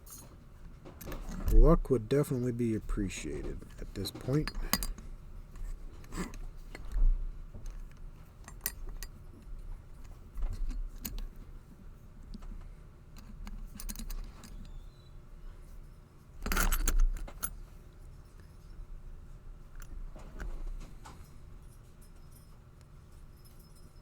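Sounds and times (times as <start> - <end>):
padlock and picks clicking: 2.9 - 11.4, 13.2 - 14.8, 16.4 - 17.6.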